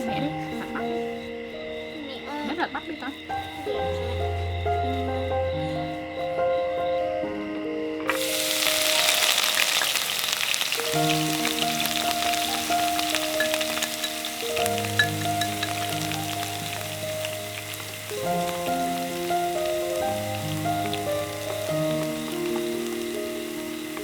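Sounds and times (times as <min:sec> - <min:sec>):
soft background music: 0:00.0 - 0:24.0
cooking fire crackling and sizzling: 0:08.1 - 0:24.0.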